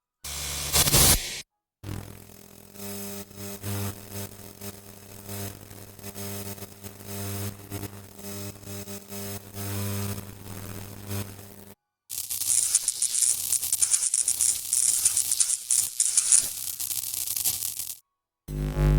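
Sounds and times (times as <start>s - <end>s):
electrical buzzing zap: 0.3s - 2.0s, 9.2s - 18.9s
sharp dense electrical crackle: 0.3s - 18.9s
crackling hiss: 12.1s - 18.0s.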